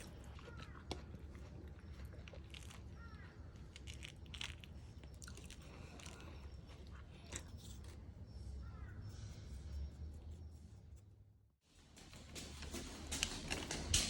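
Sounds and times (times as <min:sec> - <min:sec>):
crunchy food chewing: 0:00.0 - 0:08.9.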